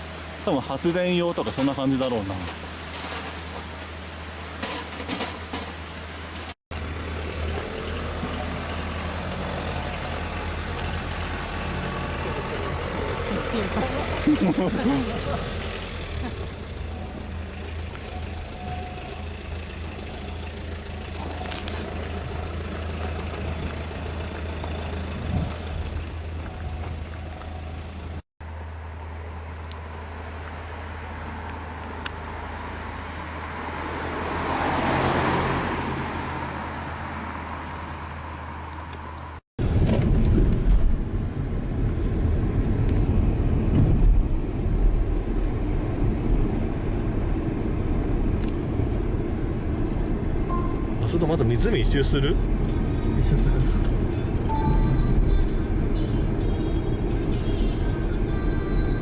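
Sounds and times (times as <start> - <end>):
car engine and road hum: 0.0 - 59.0
vehicle passing: 6.8 - 17.4, 30.8 - 38.8.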